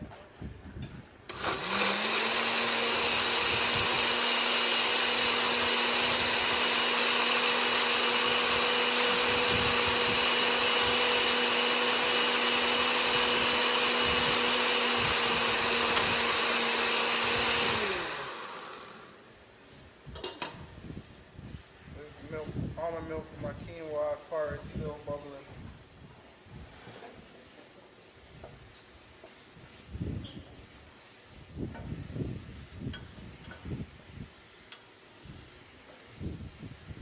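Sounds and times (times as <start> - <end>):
blender motor whine: 1.3 - 19.3.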